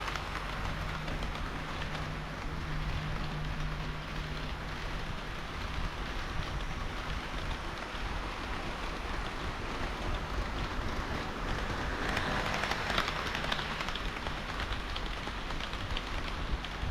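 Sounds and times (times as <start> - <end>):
low hum: 0.0 - 16.8
model train wheels rattling on rail: 0.0 - 16.9.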